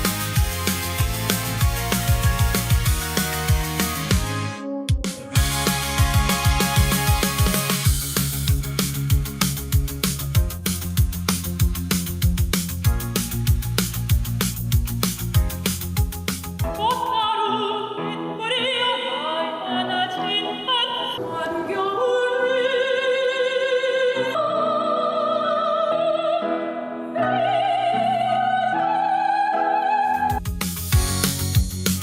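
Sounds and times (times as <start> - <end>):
operatic singing: 16.9 - 30.4.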